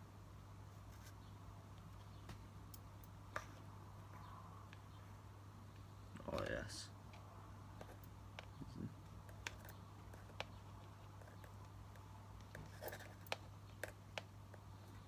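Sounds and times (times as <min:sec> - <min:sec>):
handling clicks and scratches: 0:07.1 - 0:15.0.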